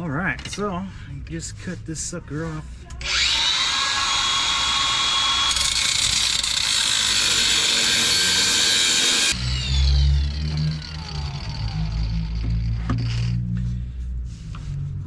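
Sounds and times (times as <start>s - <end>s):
cutting disc grinding steel pipe: 3.0s - 13.6s.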